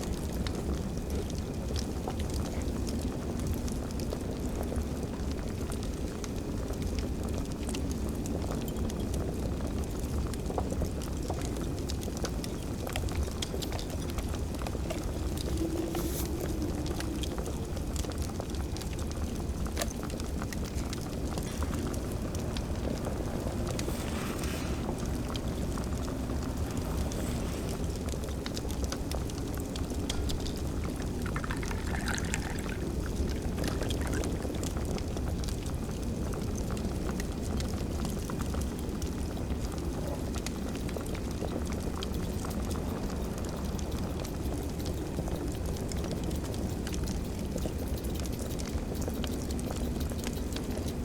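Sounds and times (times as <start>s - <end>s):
wood fire crackling and popping: 0.0s - 51.0s
low rumble: 12.8s - 35.4s.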